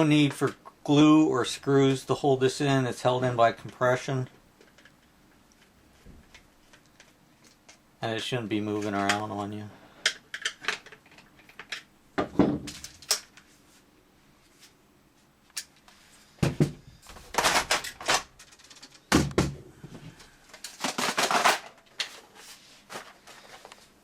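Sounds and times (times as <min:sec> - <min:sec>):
plastic parts clicking and rattling: 0:04.6 - 0:07.8, 0:10.0 - 0:11.9, 0:12.6 - 0:13.4, 0:17.1 - 0:19.4, 0:20.5 - 0:22.2.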